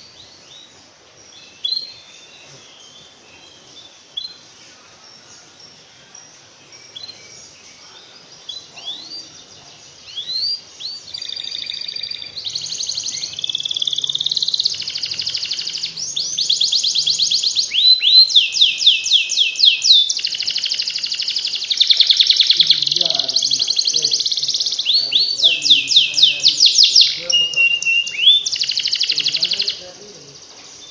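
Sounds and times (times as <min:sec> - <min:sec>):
canary singing trills: 0:00.0 - 0:30.9.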